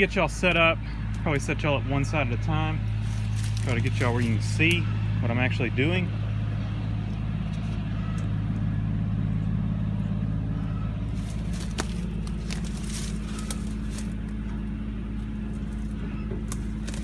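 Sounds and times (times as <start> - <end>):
engine idling: 0.0 - 17.0
handling clicks and knocks: 11.1 - 14.6.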